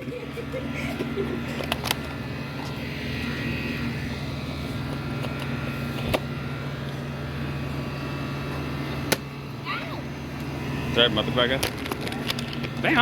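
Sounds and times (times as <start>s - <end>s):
low machine hum: 0.0s - 13.0s.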